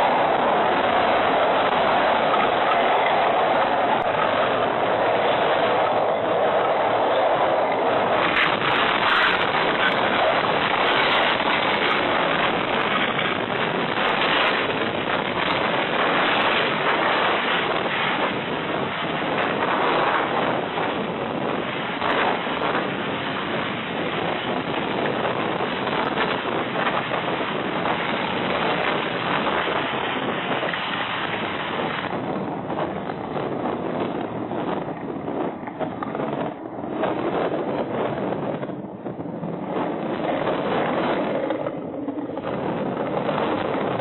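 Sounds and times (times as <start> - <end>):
storm wind buffeting microphone: 0.0 - 44.0.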